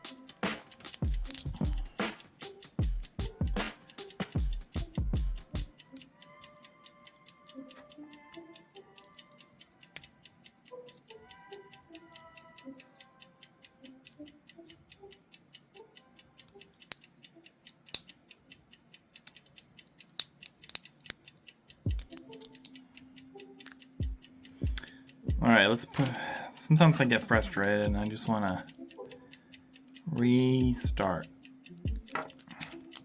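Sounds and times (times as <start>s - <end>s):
loud clicks: 0.0s - 4.9s
rapid ticking beat: 0.0s - 6.0s, 7.2s - 33.0s
soft background music: 0.0s - 18.2s, 20.2s - 33.0s.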